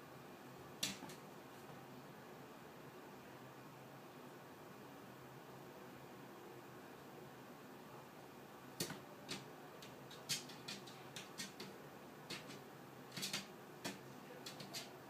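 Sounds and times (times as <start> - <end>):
faint steady hiss: 0.0 - 15.0
cat claws clicking on floor: 10.1 - 11.7, 12.3 - 14.9.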